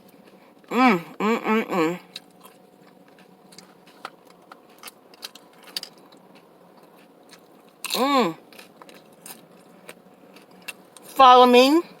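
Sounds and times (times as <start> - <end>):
chewing crunchy chips: 2.0 - 11.2.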